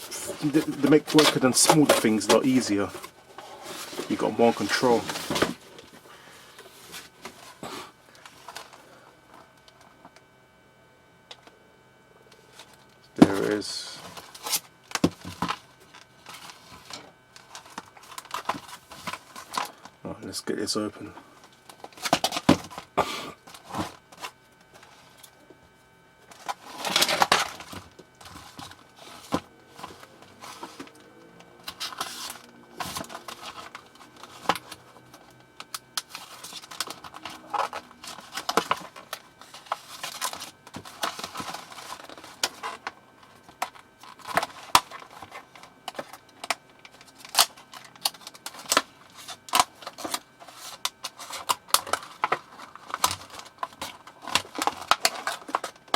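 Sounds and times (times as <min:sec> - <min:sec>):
packaging rustling and tearing: 0:00.0 - 0:08.8, 0:12.5 - 0:20.0, 0:26.3 - 0:55.9.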